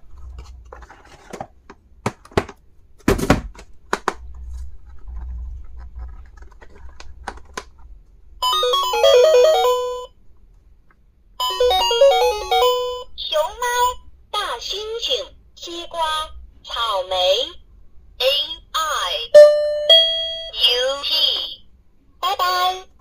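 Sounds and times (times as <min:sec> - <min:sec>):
plastic items clicking and tapping: 0:00.2 - 0:07.9
electronic toy beeping tune: 0:08.4 - 0:10.1, 0:11.4 - 0:13.1, 0:19.4 - 0:20.6.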